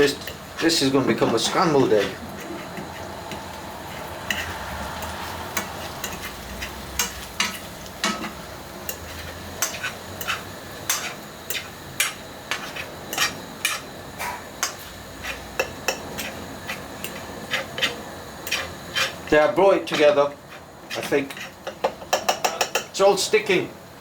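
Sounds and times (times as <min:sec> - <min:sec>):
fork scraping a frying pan: 0:00.0 - 0:22.9
food sizzling: 0:00.0 - 0:24.0
sharp taps on pan: 0:21.6 - 0:22.9.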